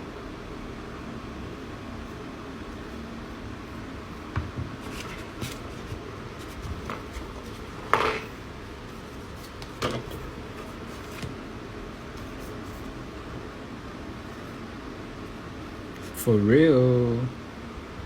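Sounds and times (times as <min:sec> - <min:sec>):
steady background hum: 0:00.0 - 0:18.0
cardboard box being opened: 0:04.7 - 0:11.4.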